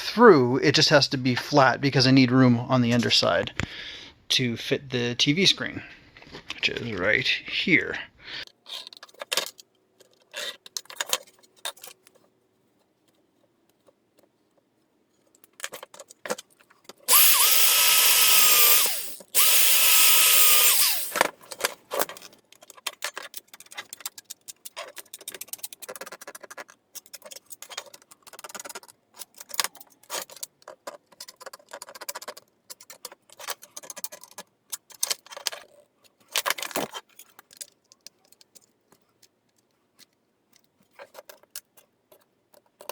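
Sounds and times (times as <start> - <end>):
metal clicks taps and scrapes: 8.4 - 17.1, 21.1 - 42.9
power drill whine and grinding: 17.1 - 21.2.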